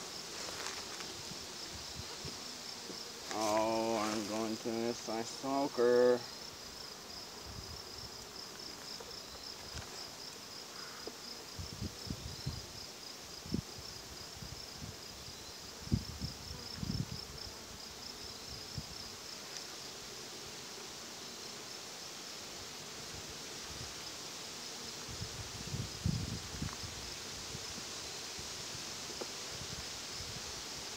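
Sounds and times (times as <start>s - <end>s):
honey bees buzzing: 0.0s - 30.9s.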